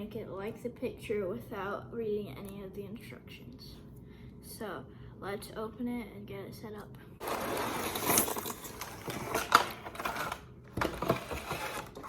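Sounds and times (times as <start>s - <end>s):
packaging rustling: 7.2s - 12.0s.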